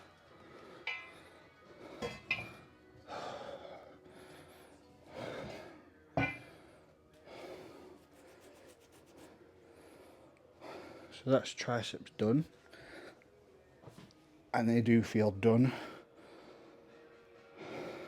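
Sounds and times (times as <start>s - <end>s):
man breathing hard and gasping: 0.4s - 8.0s.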